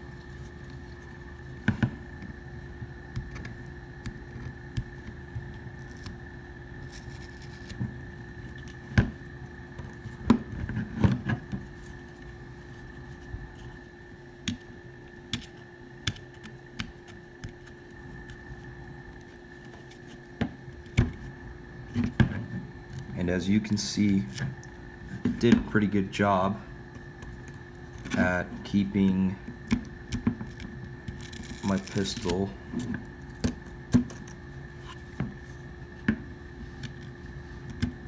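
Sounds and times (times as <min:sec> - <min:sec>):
faint hum: 0:00.0 - 0:38.0
grip tape peeling: 0:30.1 - 0:35.1.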